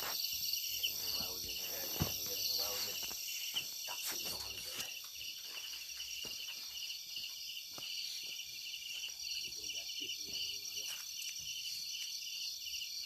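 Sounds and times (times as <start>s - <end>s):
insects trilling: 0.0s - 13.0s
knocks and rustles: 1.2s - 4.9s.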